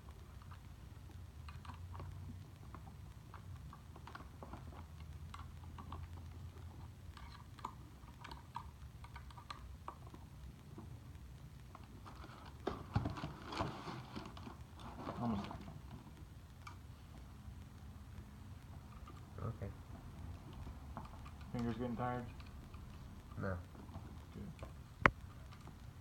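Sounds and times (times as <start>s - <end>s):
light clicks and taps: 0.1s - 26.0s.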